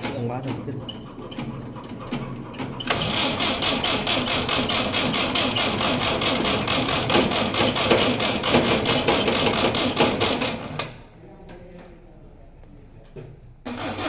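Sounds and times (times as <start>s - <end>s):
engine cranking on starter: 2.8s - 8.5s, 13.7s - 14.0s.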